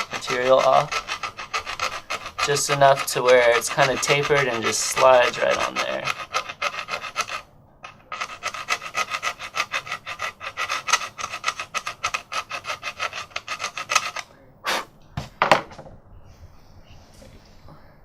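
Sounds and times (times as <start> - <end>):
hand file rasping: 0.0 - 14.3.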